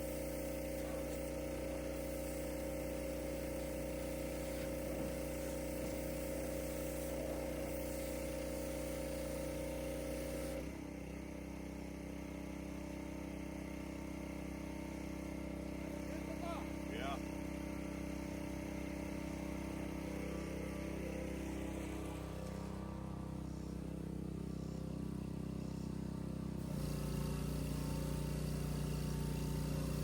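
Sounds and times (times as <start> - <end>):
engine running with pitched hum: 0.0 - 30.0.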